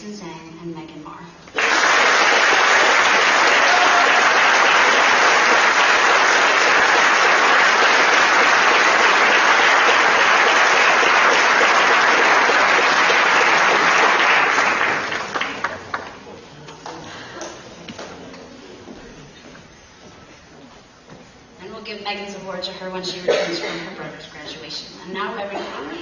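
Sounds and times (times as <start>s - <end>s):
audience applauding: 1.5s - 16.2s.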